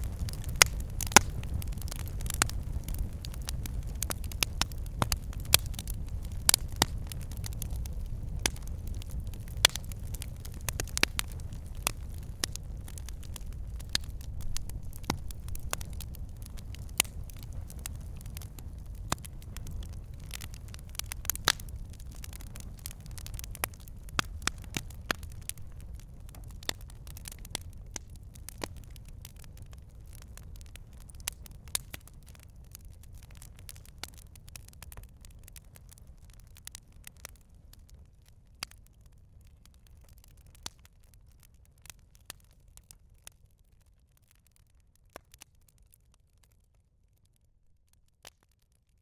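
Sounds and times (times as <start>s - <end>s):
campfire crackling and popping: 0.0s - 49.0s.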